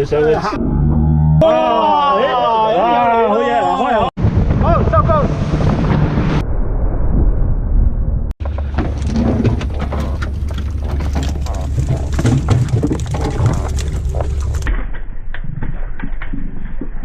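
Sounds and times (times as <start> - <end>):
wind buffeting microphone: 4.2 - 14.7
rain pattering: 10.5 - 14.7.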